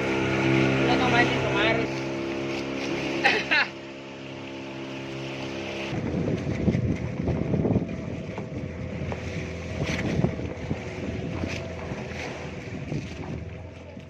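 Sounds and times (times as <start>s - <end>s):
motorboat engine running: 0.0s - 14.0s
rushing wind and water: 0.0s - 14.0s.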